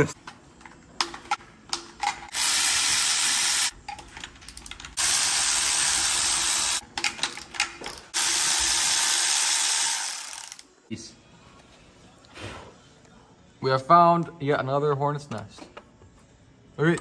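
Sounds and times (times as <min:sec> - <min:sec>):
electric ratchet spinning: 0:02.3 - 0:03.8, 0:04.9 - 0:10.7.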